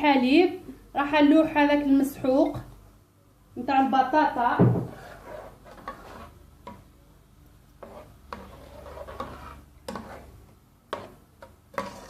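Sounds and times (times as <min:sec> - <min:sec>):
utensil stirring in a pot: 0:04.9 - 0:07.0, 0:07.6 - 0:12.0.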